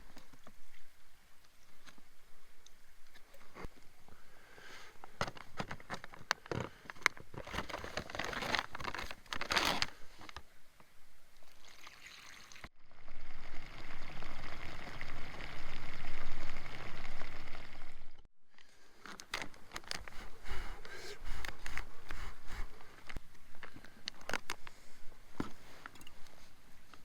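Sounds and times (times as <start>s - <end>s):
packaging rustling and clicking: 5.1s - 10.4s, 19.0s - 20.4s
water pouring: 11.4s - 18.1s.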